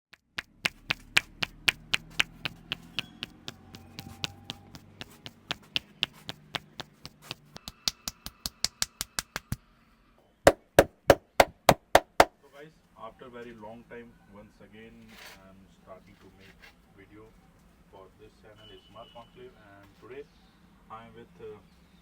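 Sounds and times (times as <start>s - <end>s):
hands tapping on head: 0.2s - 9.6s, 10.5s - 12.3s.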